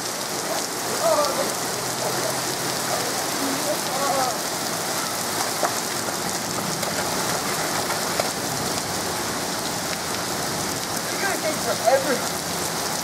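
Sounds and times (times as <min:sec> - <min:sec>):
heavy rain pouring: 0:00.0 - 0:13.0.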